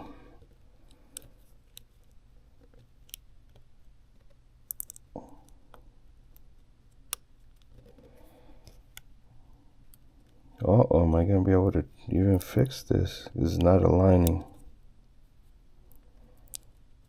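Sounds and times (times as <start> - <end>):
small clicks and taps: 0.8 - 9.1.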